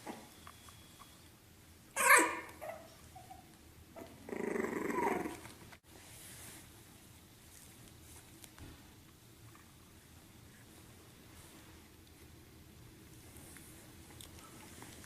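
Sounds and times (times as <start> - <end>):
dog barking: 2.0 - 2.8
dog growling: 4.0 - 5.5.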